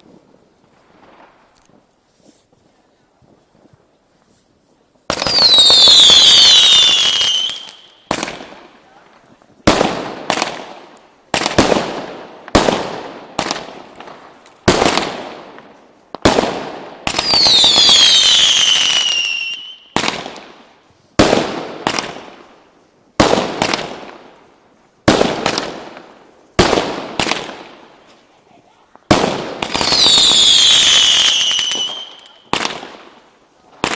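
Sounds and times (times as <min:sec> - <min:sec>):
fireworks crackling: 0:00.0 - 0:33.9
fireworks bangs echoing: 0:05.1 - 0:28.2, 0:28.9 - 0:33.9
fireworks whistles falling in pitch: 0:05.2 - 0:08.1, 0:17.2 - 0:20.0, 0:29.7 - 0:32.6.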